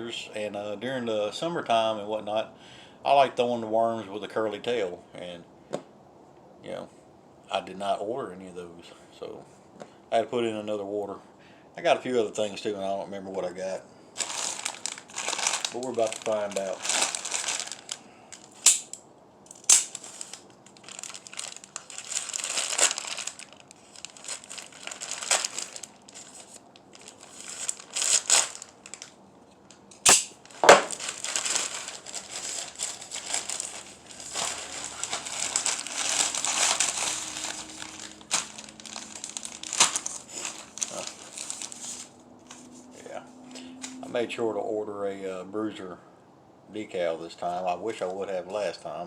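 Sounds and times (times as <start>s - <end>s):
plastic packaging crinkling: 14.2s - 42.7s
sharp plastic snaps: 18.6s - 20.0s, 29.6s - 31.0s.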